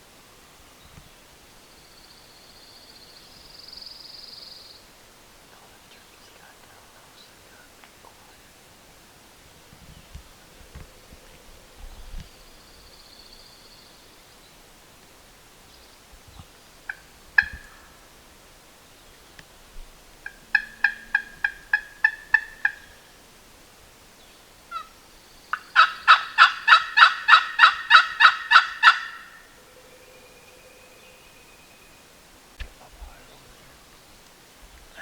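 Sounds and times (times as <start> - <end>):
turkey yelping: 20.2 - 23.0, 24.7 - 24.9, 25.5 - 29.6.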